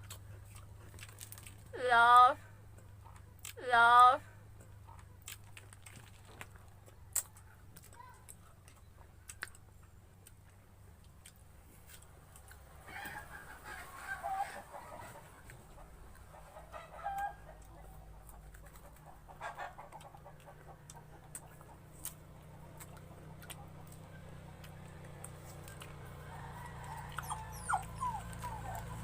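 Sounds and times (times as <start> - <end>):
fowl clucking: 12.9 - 21.8.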